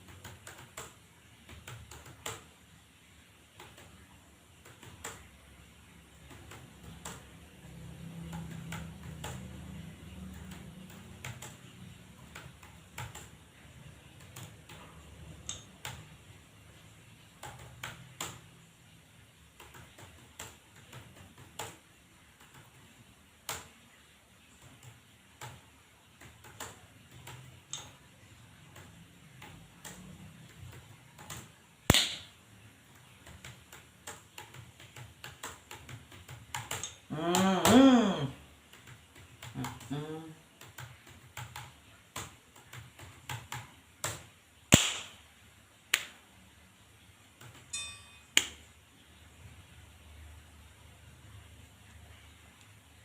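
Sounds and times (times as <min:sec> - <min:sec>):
keyboard keys clicking: 0:00.0 - 0:02.6, 0:03.5 - 0:05.3, 0:06.1 - 0:07.4, 0:08.2 - 0:16.2, 0:17.2 - 0:18.5, 0:19.5 - 0:23.8, 0:24.4 - 0:31.6, 0:32.9 - 0:38.0, 0:38.6 - 0:44.9.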